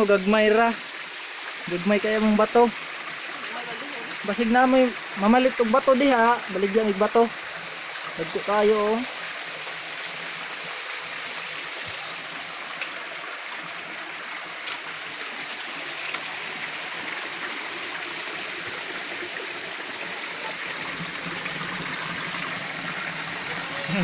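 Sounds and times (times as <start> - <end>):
stream water running: 0.0 - 24.0.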